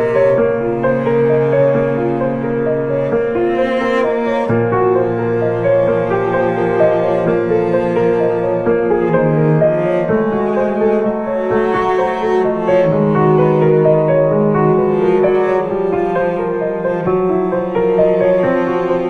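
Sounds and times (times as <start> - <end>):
bowed strings: 0.0 - 19.0
piano: 0.0 - 19.0.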